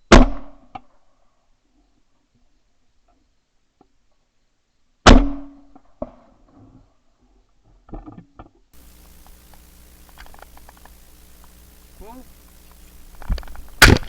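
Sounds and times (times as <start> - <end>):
faint sharp crack: 8.8 - 14.0
loud shotgun shot: 8.8 - 14.0.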